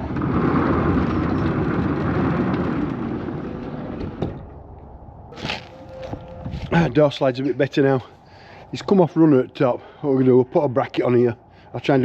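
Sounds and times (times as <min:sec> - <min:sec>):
sliding door rumbling scrape: 0:00.0 - 0:07.0.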